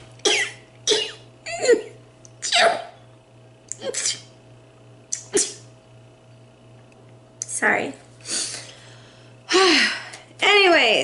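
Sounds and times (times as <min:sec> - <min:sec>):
person sneezing: 0:00.2 - 0:03.0, 0:05.2 - 0:05.6.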